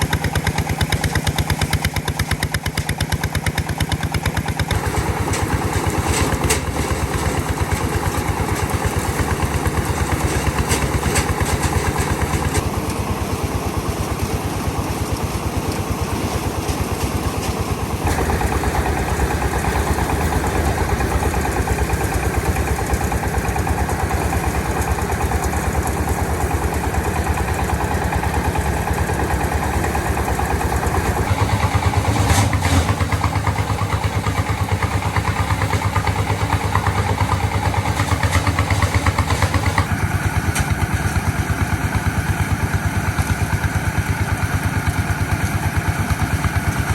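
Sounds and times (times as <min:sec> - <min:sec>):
diesel engine chugging: 0:00.0 - 0:46.9.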